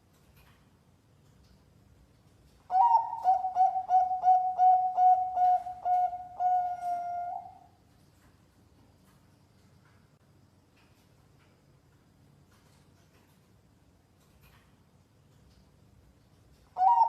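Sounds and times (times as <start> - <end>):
dove cooing: 2.7 - 7.7, 16.8 - 17.0.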